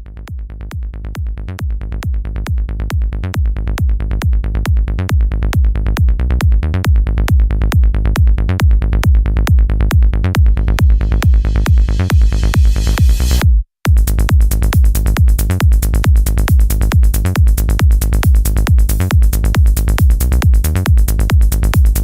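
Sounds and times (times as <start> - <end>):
electronic dance music: 10.4 - 13.4.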